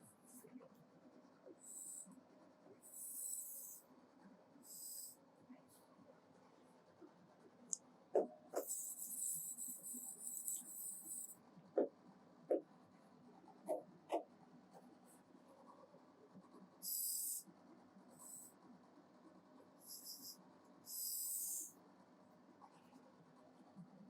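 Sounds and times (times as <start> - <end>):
pen scratching on paper: 1.6 - 2.2, 2.8 - 3.9, 8.2 - 11.9, 13.4 - 17.5.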